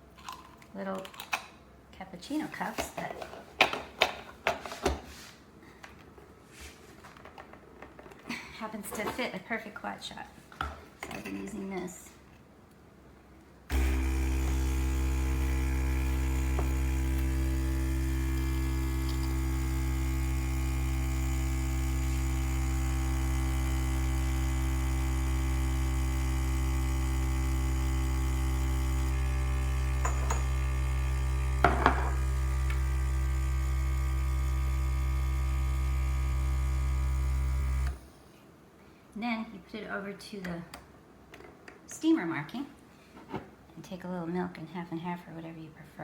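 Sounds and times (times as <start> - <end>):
espresso machine pump humming: 13.7 - 38.1.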